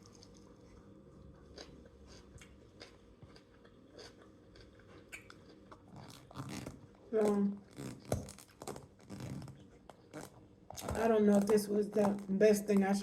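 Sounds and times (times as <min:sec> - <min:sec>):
faint chewing with mouth clicks: 0:00.0 - 0:06.5.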